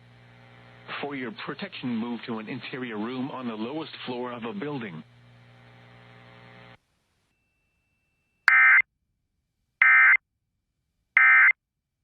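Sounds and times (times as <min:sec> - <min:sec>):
faint electrical hum: 0:00.0 - 0:08.4.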